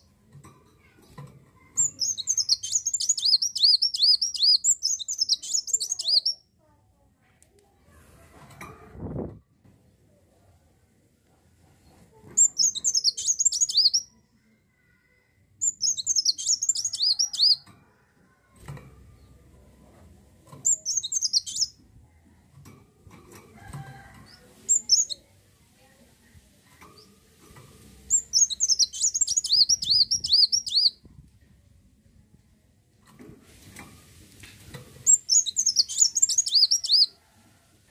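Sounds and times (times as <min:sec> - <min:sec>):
sunbird twittering: 0:01.8 - 0:06.4, 0:12.4 - 0:14.0, 0:20.7 - 0:21.7, 0:28.1 - 0:30.9, 0:35.1 - 0:37.1.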